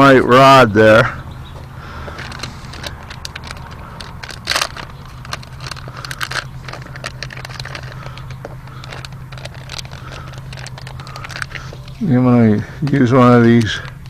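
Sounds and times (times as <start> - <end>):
steady low hum: 0.0 - 14.0
plastic packaging crinkling: 1.9 - 12.0
fishing tackle clicks and rattles: 2.2 - 11.7.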